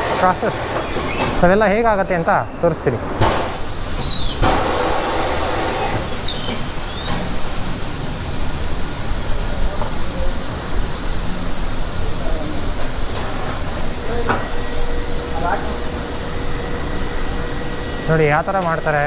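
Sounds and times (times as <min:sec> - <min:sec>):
steady hissing noise: 0:00.0 - 0:19.0.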